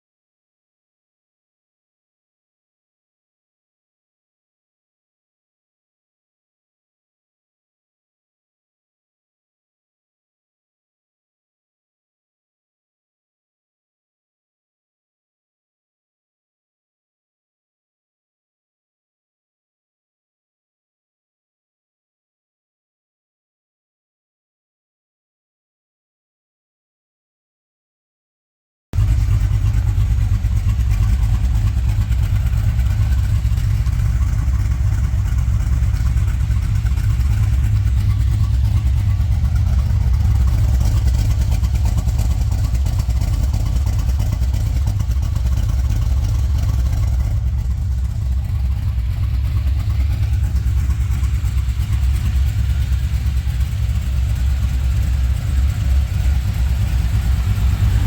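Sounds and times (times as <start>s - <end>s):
engine deep rumble: 29.0s - 58.0s.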